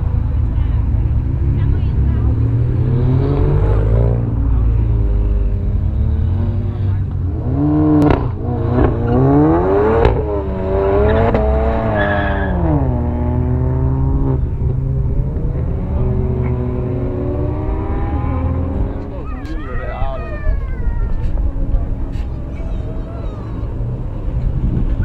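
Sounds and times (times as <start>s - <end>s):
car engine revving: 0.0s - 19.8s.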